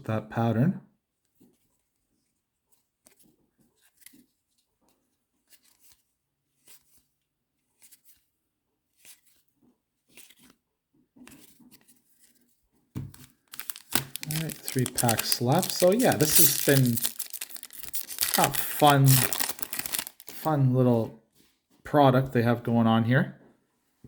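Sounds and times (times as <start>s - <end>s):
trading cards flipped by hand: 5.5s - 6.0s, 7.8s - 8.3s, 9.0s - 9.5s, 10.1s - 10.6s, 13.0s - 20.5s.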